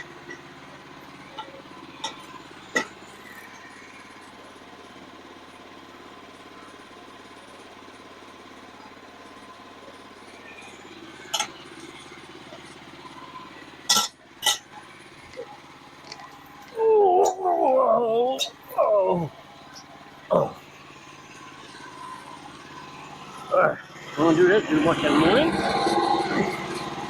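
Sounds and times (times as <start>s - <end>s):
steady low hum: 0.0s - 27.0s
sharp metallic clinks and knocks: 13.9s - 14.8s.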